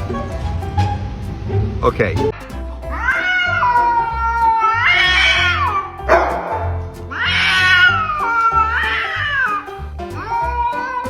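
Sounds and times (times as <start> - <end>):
background music with bass beat: 0.0 - 11.0
cat yowling: 10.2 - 11.0.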